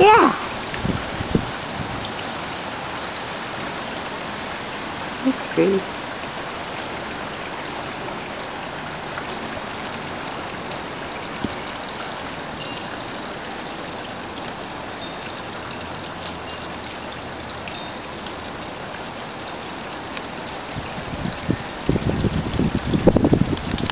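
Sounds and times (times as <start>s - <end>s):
strong wind rushing: 0.4s - 2.1s, 21.0s - 23.9s.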